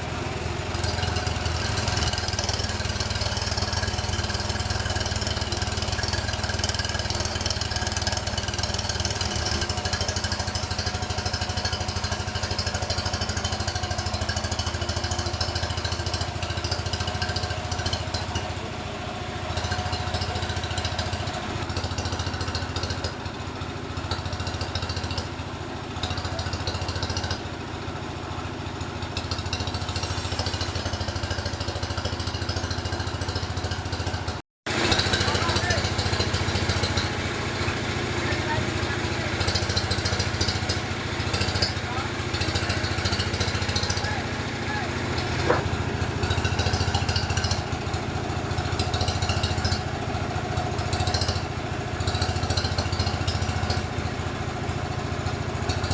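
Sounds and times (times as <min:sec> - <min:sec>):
engine drone: 0:00.0 - 0:27.6, 0:28.4 - 0:55.9
saw cutting wood: 0:29.7 - 0:31.6, 0:45.0 - 0:47.2.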